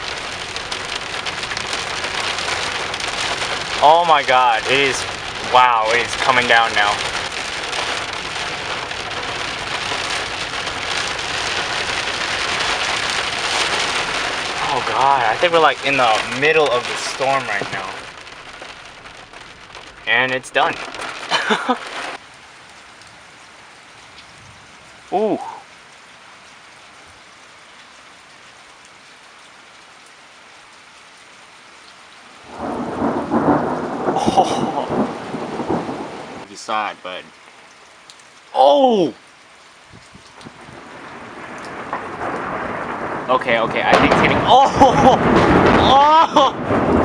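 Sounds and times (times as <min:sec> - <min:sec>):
thunder rumble: 0:00.0 - 0:22.2, 0:32.5 - 0:36.5, 0:40.4 - 0:47.0
heavy rain: 0:00.0 - 0:47.0.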